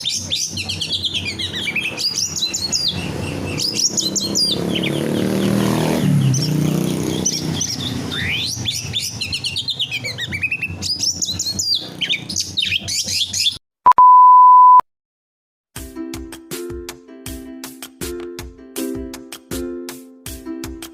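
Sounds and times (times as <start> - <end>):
songbird singing: 0.0 - 13.6
steady beep: 13.9 - 14.8
music: 15.8 - 20.9.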